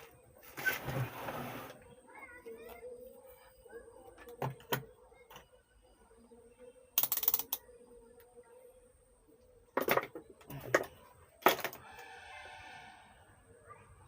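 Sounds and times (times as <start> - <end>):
small parts clicking and clinking: 7.0 - 7.6.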